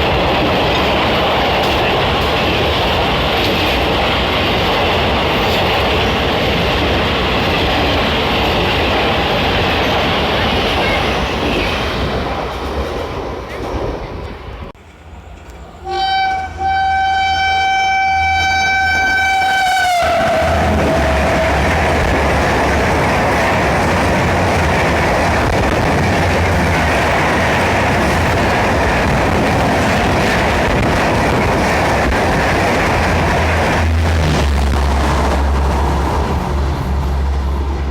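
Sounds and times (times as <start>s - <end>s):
train wheels rumbling on rails: 0.0s - 37.9s
train horn: 15.8s - 21.6s.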